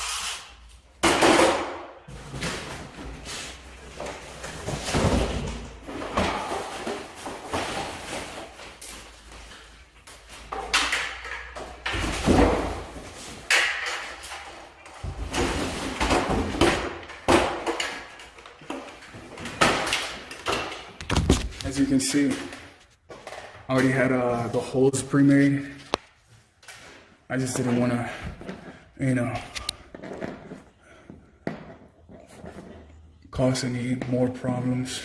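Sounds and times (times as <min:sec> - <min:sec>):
objects knocking and scraping: 0:01.0 - 0:24.5.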